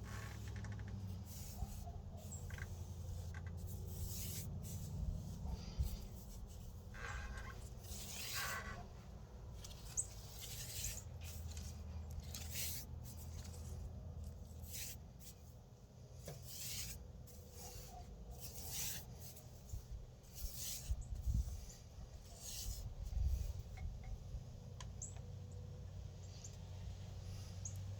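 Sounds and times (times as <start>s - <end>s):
paintbrush swishes on wood: 1.2s - 8.9s, 9.6s - 15.5s, 16.2s - 23.7s.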